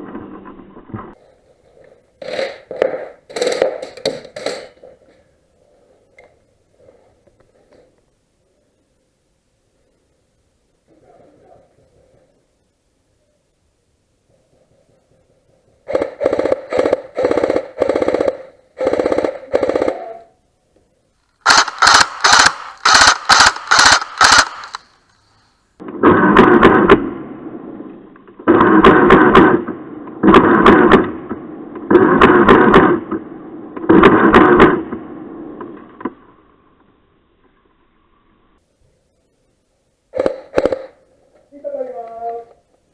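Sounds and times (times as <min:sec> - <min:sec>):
airsoft gun full-auto bursts: 0:02.2 - 0:04.7, 0:15.9 - 0:20.2, 0:21.4 - 0:24.9, 0:40.2 - 0:41.0.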